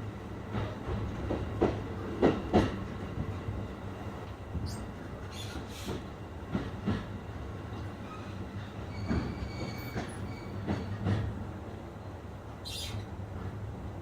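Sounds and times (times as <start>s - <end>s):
train rumbling on rails: 0.0s - 14.0s
faint high wheel squeal: 8.1s - 11.0s.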